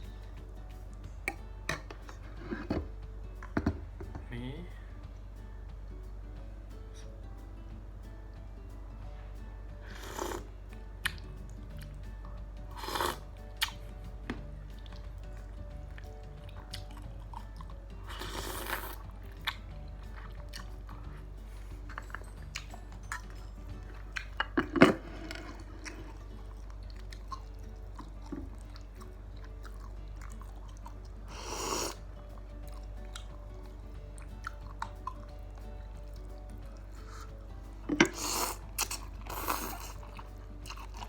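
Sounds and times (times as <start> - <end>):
soft background music: 0.0 - 41.0
chewing with small clicks: 11.0 - 12.0, 25.3 - 31.2, 32.3 - 41.0.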